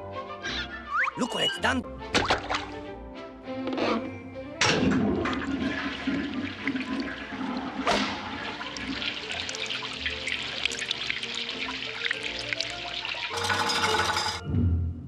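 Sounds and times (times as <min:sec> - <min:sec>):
faint background music: 0:00.0 - 0:15.0
water rushing: 0:05.1 - 0:14.2.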